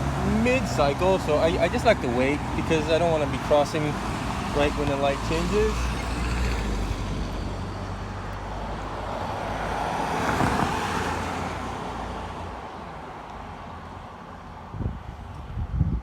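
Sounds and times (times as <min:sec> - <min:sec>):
vehicle passing by: 0:00.0 - 0:12.3.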